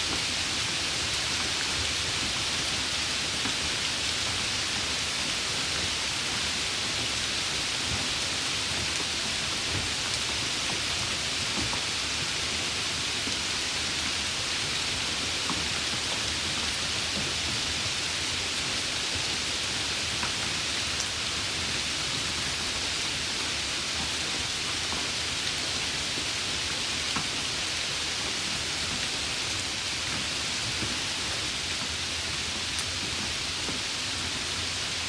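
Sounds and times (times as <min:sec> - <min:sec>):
steady rain hiss: 0:00.0 - 0:35.0
faint raindrop ticks: 0:15.4 - 0:17.3, 0:32.6 - 0:34.2.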